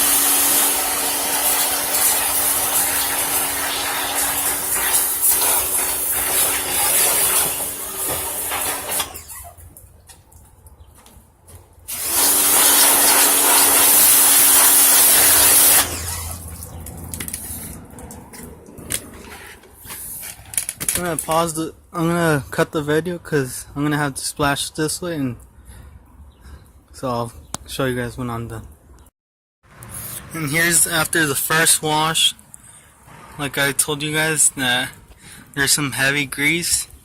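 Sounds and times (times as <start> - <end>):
pressure washer spray hiss: 0.0 - 9.2, 11.9 - 16.4
pump humming: 0.0 - 9.6, 11.9 - 17.7.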